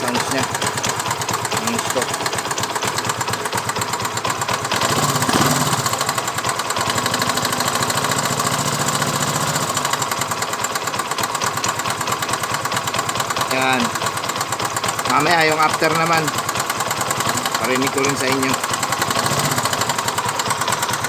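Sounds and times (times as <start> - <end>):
motorcycle engine idling: 0.0 - 21.0
rapid engine knocking: 0.0 - 21.0.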